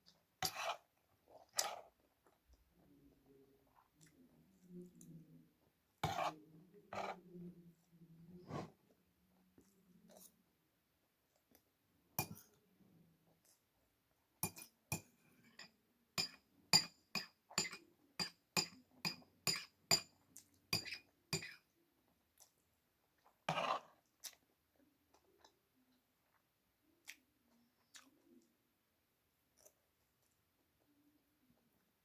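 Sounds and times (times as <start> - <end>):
short scraping: 8.4 - 8.7.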